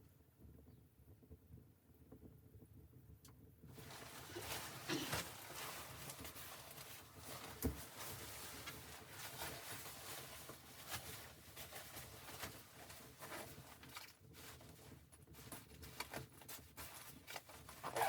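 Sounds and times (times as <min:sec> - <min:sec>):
rustling and tapping: 0:03.6 - 0:18.0.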